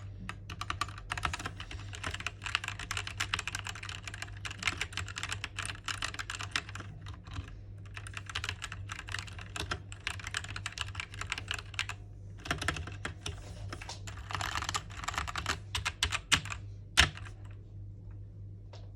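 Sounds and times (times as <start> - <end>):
mechanical keyboard typing: 0.0 - 17.4.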